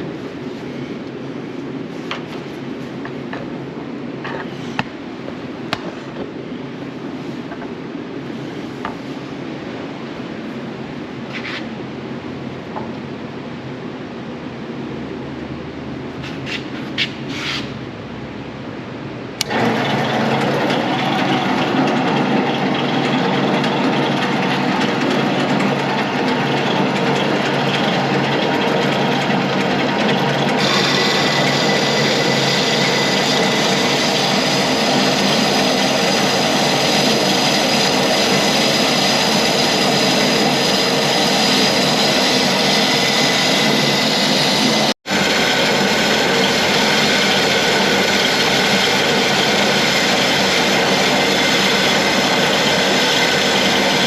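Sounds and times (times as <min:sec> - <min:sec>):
power tool running: 0:19.4 - 0:54.0.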